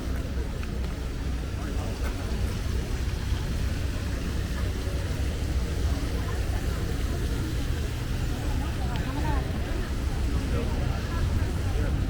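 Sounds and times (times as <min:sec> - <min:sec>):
traffic engines rumbling: 0:00.0 - 0:12.0.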